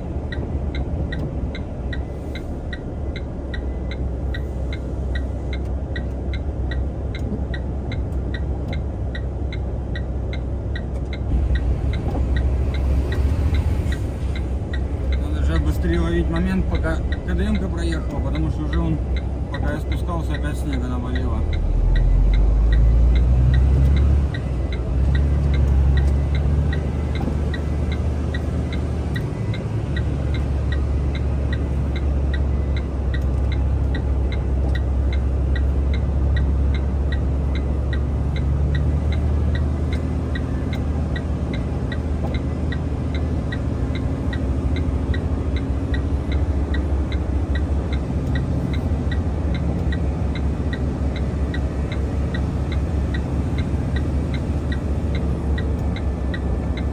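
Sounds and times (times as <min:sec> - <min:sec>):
diesel truck engine rumbling: 0:00.0 - 0:56.9
regular light ticking: 0:00.3 - 0:56.9.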